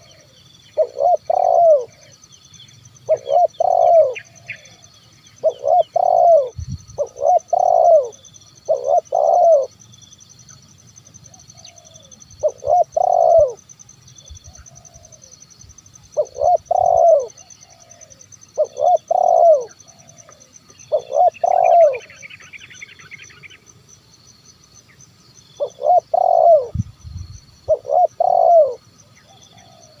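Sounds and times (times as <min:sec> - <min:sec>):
dove cooing: 0:00.0 - 0:02.2, 0:03.0 - 0:09.7, 0:11.2 - 0:13.6, 0:14.4 - 0:15.4, 0:16.1 - 0:23.5, 0:25.6 - 0:26.9, 0:27.6 - 0:30.0
bird chirping: 0:00.0 - 0:30.0.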